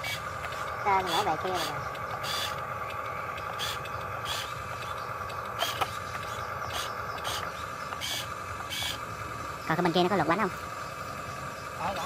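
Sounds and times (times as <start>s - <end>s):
model truck mechanical hum: 0.0s - 12.0s.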